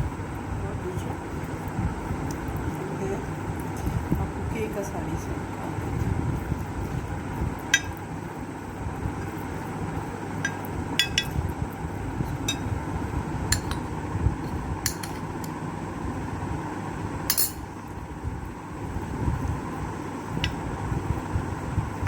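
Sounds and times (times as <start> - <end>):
low background hum: 0.0 - 22.0
spoon and dishes clinking: 7.8 - 8.0, 10.4 - 11.4, 13.5 - 13.9, 14.9 - 15.3, 17.3 - 17.7.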